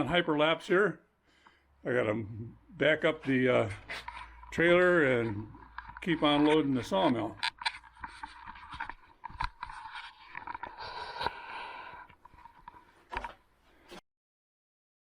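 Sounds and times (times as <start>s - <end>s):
faint knocks clicks and scraping: 3.2s - 14.0s.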